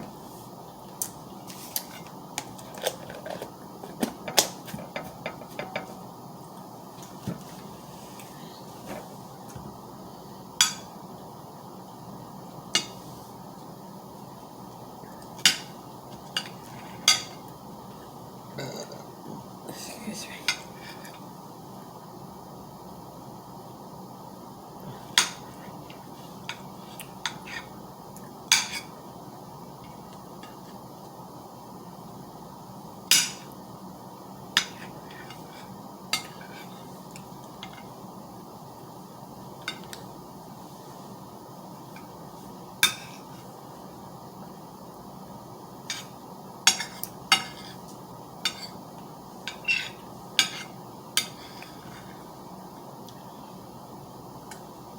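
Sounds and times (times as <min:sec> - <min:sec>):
steady background hiss: 0:00.0 - 0:54.9
cutlery clinking on dishes: 0:28.5 - 0:28.9, 0:46.7 - 0:47.8, 0:49.5 - 0:52.0
utensils clinking against dishware: 0:49.5 - 0:51.4.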